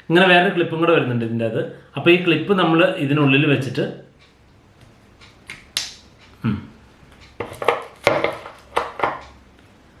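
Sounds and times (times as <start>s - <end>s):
plastic parts clicking and knocking: 7.3s - 9.4s.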